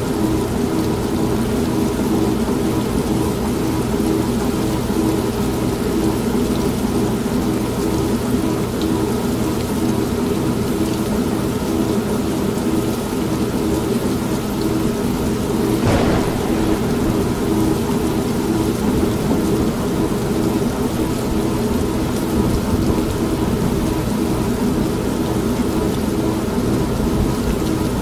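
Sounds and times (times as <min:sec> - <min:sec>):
rain: 0:00.0 - 0:28.0
thunder rumbling: 0:15.6 - 0:20.1.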